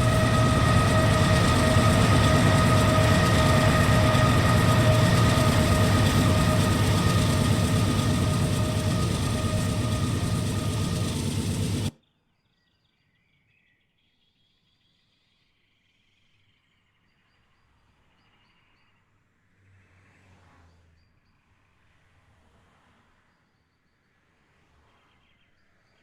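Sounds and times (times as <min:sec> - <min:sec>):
high ringing tone: 0:00.0 - 0:11.9
train rumbling on rails: 0:00.0 - 0:11.9.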